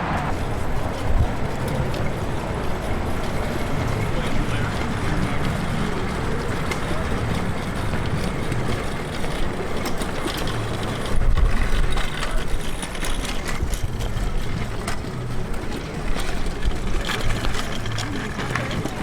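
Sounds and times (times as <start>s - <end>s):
wind rumbling on microphone: 0.0s - 9.9s.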